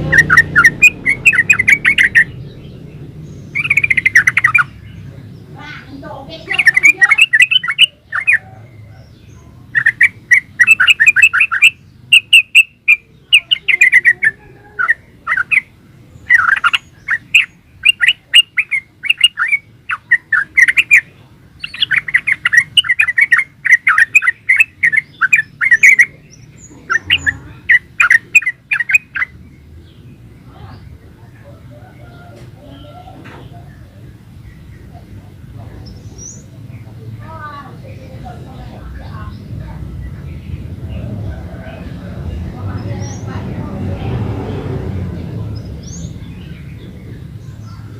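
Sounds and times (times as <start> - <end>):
bulbul singing chirping notes: 0.0 - 30.3.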